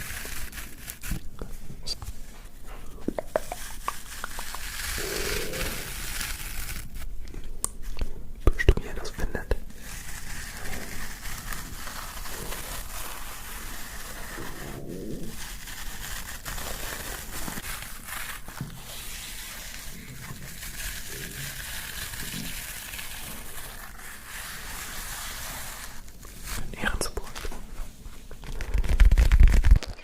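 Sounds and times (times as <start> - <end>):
microphone hiss: 0.0 - 30.0
stomach growling: 4.9 - 6.0.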